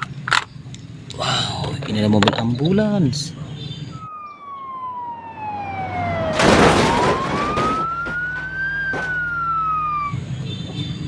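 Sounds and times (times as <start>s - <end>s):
toy electronic siren wailing: 3.9s - 10.3s.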